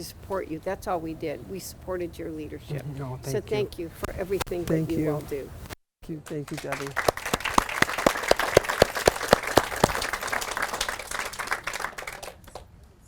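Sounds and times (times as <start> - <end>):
audience applauding: 6.3 - 12.7
person clapping close by: 6.3 - 12.7.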